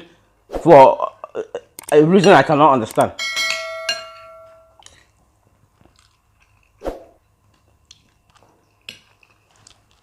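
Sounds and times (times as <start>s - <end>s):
spoon clicking against plate: 1.8s - 4.2s
chewing: 4.8s - 10.0s.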